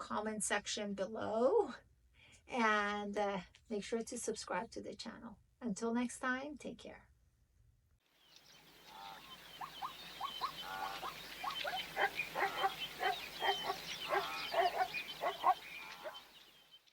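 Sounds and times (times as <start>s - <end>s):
animal chirps: 8.6s - 16.8s.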